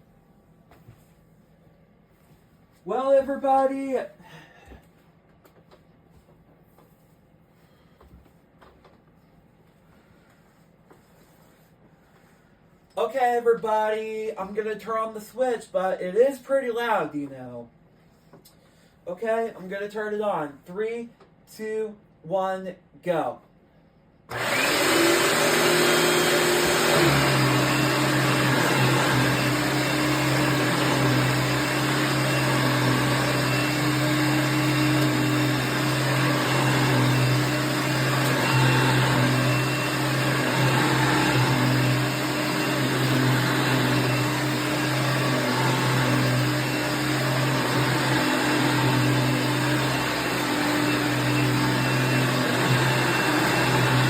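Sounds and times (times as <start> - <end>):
vacuum cleaner motor running: 24.3 - 54.0.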